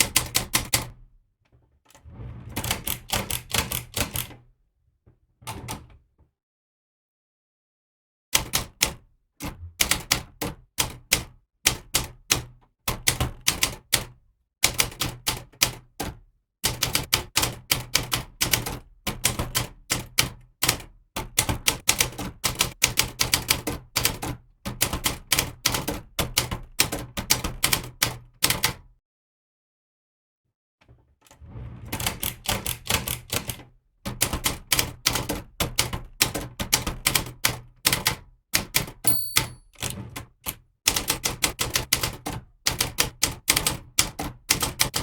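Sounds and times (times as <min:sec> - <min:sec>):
typewriter key strikes: 0:38.8 - 0:39.6.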